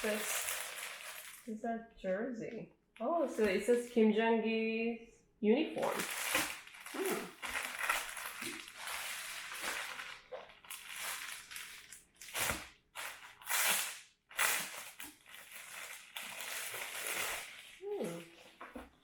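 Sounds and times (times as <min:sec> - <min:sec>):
packaging rustling and crackling: 0:00.0 - 0:01.5, 0:05.8 - 0:19.0.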